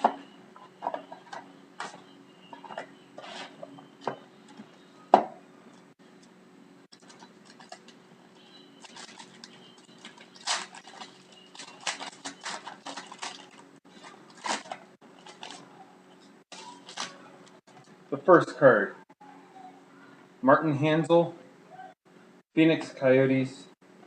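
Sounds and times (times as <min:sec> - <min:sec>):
cardboard and cards rustling: 0:08.8 - 0:15.8.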